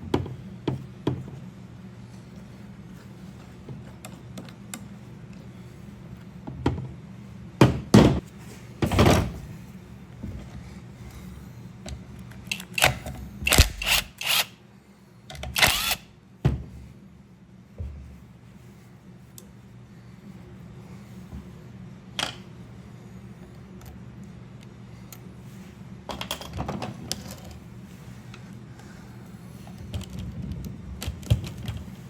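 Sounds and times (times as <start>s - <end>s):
tools knocking on a workbench: 7.6s - 8.2s.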